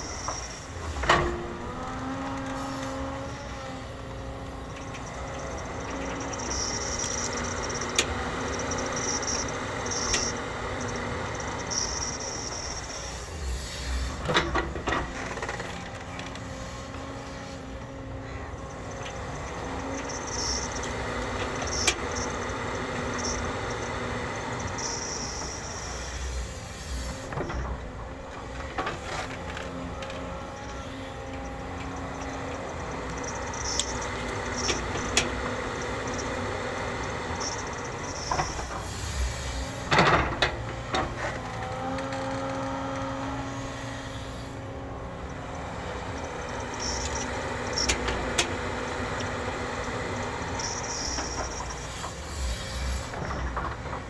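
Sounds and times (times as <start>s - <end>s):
excavator diesel engine running: 0.0s - 54.0s
short high squeaks: 5.3s - 14.2s, 19.9s - 27.6s, 32.7s - 39.9s, 46.6s - 48.7s, 49.6s - 53.5s.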